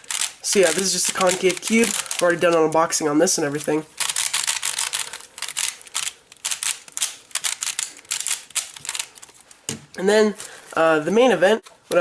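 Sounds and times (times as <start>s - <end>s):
plastic puzzle cubes clicking: 0.0s - 9.4s.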